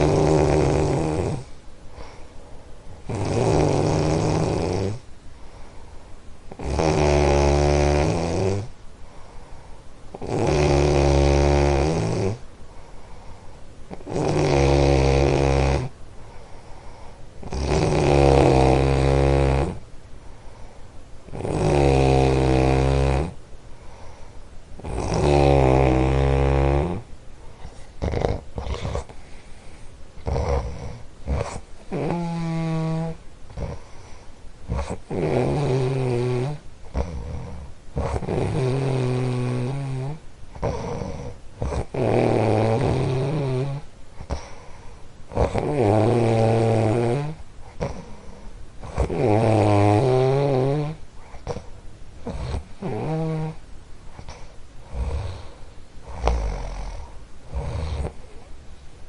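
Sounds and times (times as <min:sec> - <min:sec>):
person snoring loudly: 0:00.0 - 0:01.5, 0:03.1 - 0:05.0, 0:06.5 - 0:08.7, 0:10.2 - 0:12.4, 0:13.9 - 0:15.9, 0:17.4 - 0:19.8, 0:21.3 - 0:23.4, 0:24.8 - 0:27.1, 0:28.0 - 0:29.1, 0:30.2 - 0:33.8, 0:34.7 - 0:44.5, 0:45.3 - 0:51.6, 0:52.2 - 0:53.6, 0:54.2 - 0:58.2.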